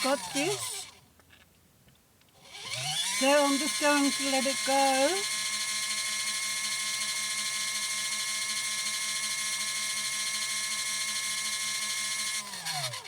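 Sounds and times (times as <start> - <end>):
spin dryer motor whining: 0.0 - 1.0, 2.4 - 13.0.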